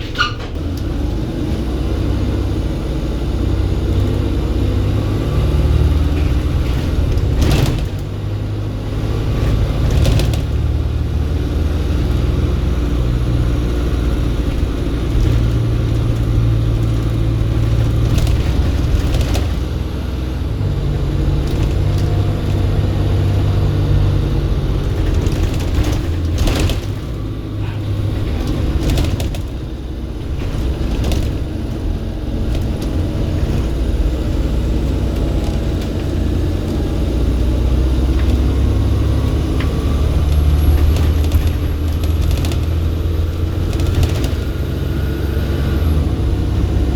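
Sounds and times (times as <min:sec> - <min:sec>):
bus diesel engine running: 0:00.0 - 0:46.9
knocks and rattles: 0:05.9 - 0:08.5, 0:14.2 - 0:23.5, 0:24.6 - 0:36.8, 0:39.5 - 0:44.6.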